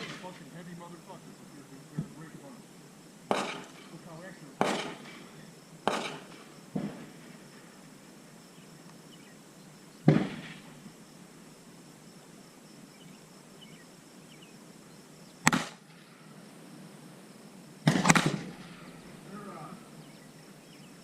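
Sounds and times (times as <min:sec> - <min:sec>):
gunshots with echo: 0:00.0 - 0:00.4, 0:03.3 - 0:04.0, 0:04.6 - 0:07.4, 0:15.4 - 0:15.9, 0:17.8 - 0:18.9.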